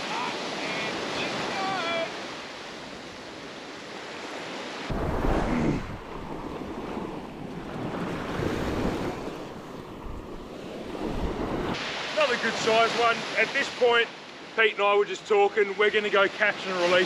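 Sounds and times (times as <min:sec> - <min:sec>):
ocean surf washing onto beach: 0:00.0 - 0:17.0
wind buffeting microphone: 0:04.9 - 0:11.8.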